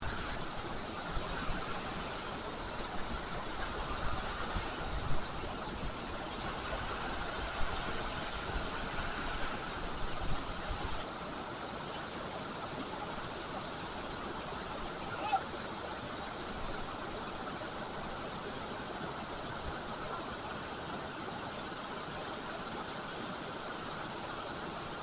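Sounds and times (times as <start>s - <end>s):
small birds chirping: 0.0s - 1.8s, 2.6s - 10.6s
flowing river water: 0.0s - 25.0s.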